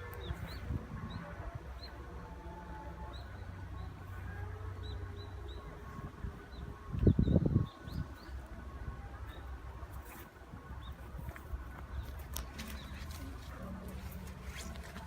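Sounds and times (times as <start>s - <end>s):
small birds chirping: 9.2s - 15.0s.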